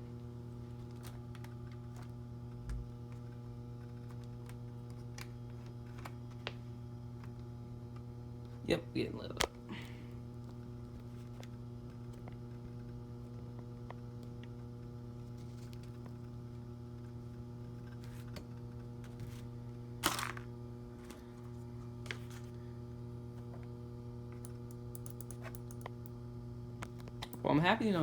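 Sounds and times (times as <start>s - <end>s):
electrical mains hum: 0.0s - 28.0s.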